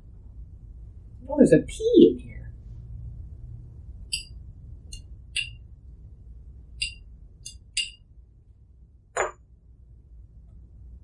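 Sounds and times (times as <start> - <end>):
utensil clinking against glass: 5.4 - 5.6, 6.8 - 8.0.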